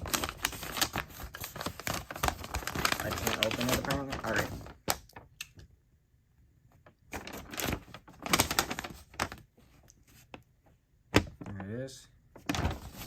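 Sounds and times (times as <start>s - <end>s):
packaging rustling and crinkling: 0.0s - 5.3s, 7.1s - 10.4s, 12.4s - 13.0s.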